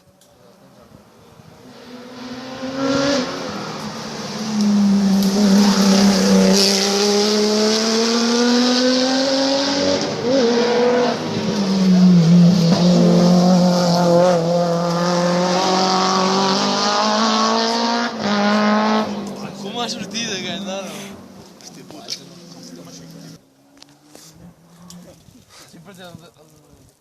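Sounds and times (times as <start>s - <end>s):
rally car engine at high revs: 1.3s - 21.2s.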